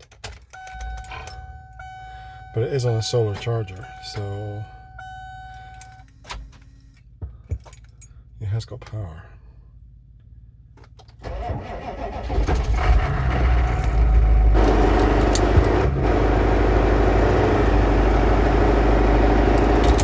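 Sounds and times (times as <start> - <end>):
diesel engine cranking: 0.0 - 6.8, 10.7 - 20.0
engine running rough: 11.2 - 20.0.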